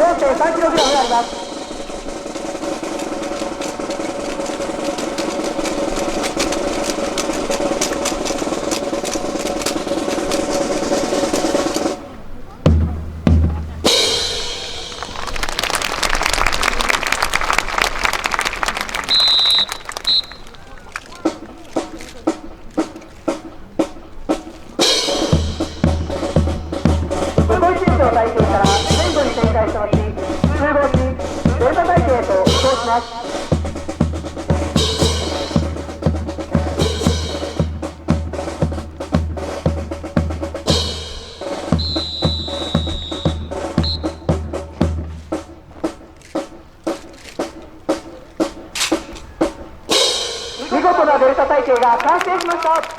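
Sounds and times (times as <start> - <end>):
drum and cymbal hit: 0.0 - 12.0, 12.7 - 15.3, 22.3 - 46.6, 47.4 - 51.1
sharp clacks: 0.5 - 12.0, 13.8 - 52.9
crowd applauding: 14.4 - 22.3, 50.6 - 52.9
shrill whistle blast: 18.6 - 20.6, 41.7 - 44.4.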